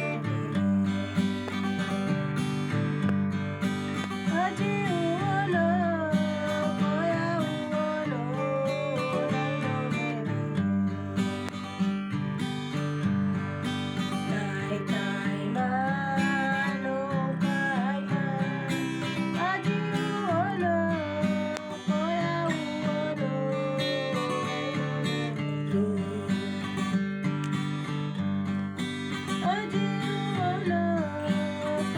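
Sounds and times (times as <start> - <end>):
strummed acoustic guitar: 0.0 - 31.9
person singing wavering melody: 4.2 - 11.4, 14.3 - 26.9, 29.4 - 31.9.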